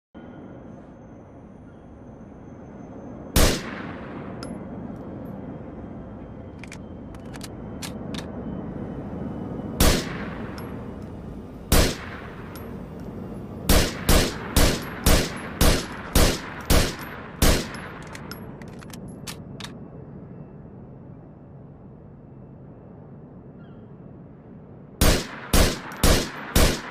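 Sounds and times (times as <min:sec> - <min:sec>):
rifle shots echoing: 0:03.4 - 0:04.3, 0:09.8 - 0:10.6, 0:11.7 - 0:12.6, 0:13.7 - 0:18.4, 0:25.0 - 0:26.9.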